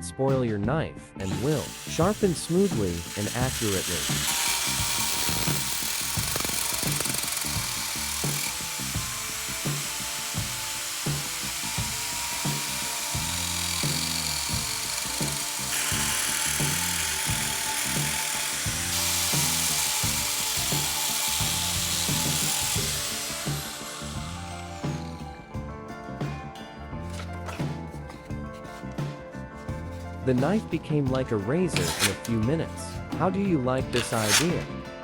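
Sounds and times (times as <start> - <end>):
background music with steady beat: 0.0 - 35.0
angle grinder grinding knife blade: 1.2 - 25.6, 27.0 - 28.8, 31.7 - 32.5, 33.9 - 34.8.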